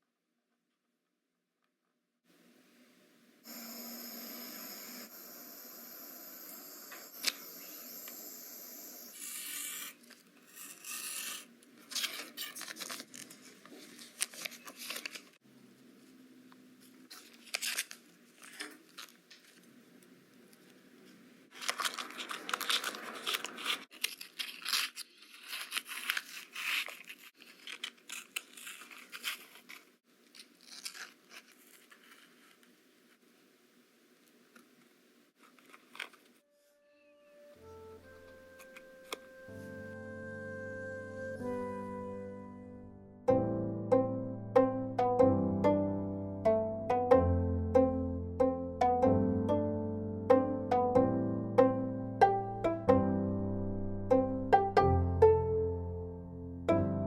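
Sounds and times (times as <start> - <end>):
faint high tones: 3.4 - 9.2
paper rustling and tearing: 9.2 - 15.4, 16.8 - 19.7, 21.5 - 32.7, 35.4 - 36.4.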